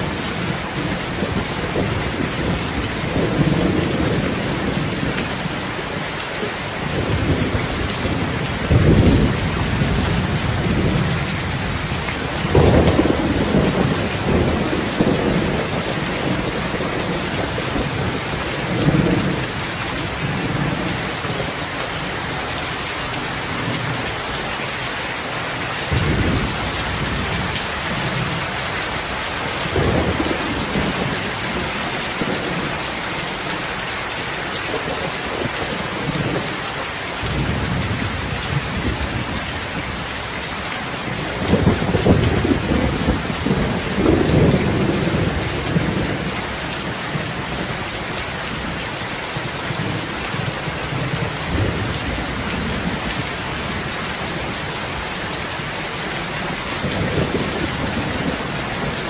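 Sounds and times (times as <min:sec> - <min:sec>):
heavy rain hiss: 0:00.0 - 0:59.0
low thunder rolls: 0:06.8 - 0:21.4, 0:25.9 - 0:28.4, 0:41.2 - 0:46.4.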